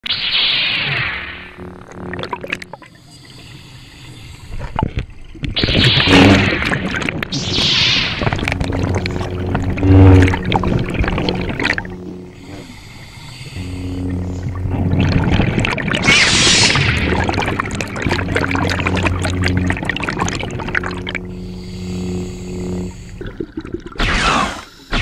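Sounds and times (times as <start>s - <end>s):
steady low hum: 0.9s - 25.0s
breathing through scuba regulator: 2.7s - 4.8s, 12.1s - 14.7s, 21.2s - 23.5s.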